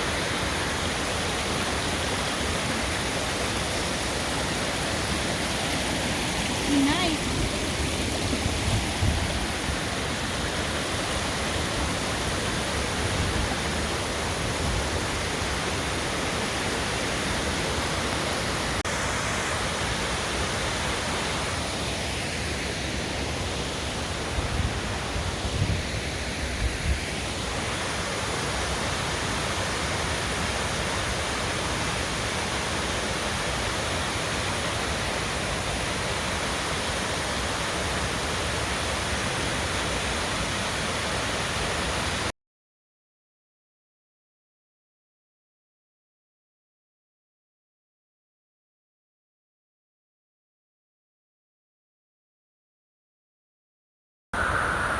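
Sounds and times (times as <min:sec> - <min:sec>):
waterfall rushing: 0:00.0 - 0:25.4, 0:27.2 - 0:42.3, 0:54.4 - 0:54.9.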